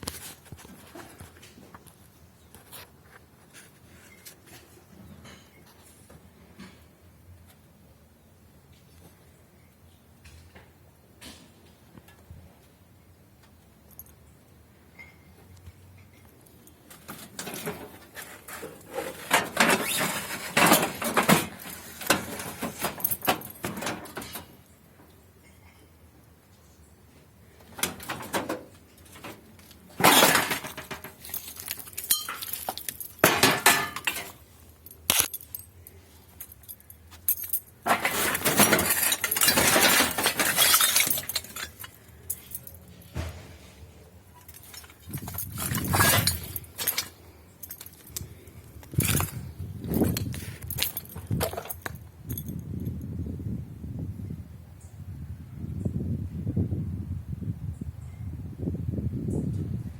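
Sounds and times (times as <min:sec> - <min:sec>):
hard objects clinking and clattering: 0:16.7 - 0:24.6, 0:27.8 - 0:43.4, 0:44.4 - 0:52.6.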